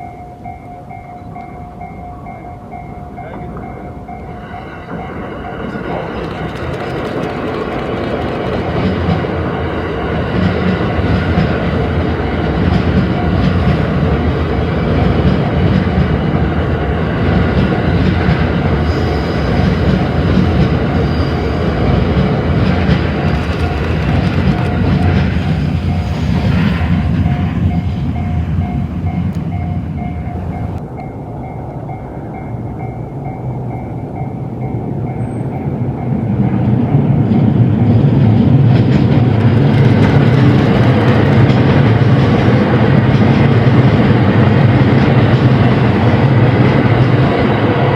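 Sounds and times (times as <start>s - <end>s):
train rumbling past: 0.0s - 47.9s
train wheel clatter: 4.6s - 30.8s, 36.9s - 47.9s.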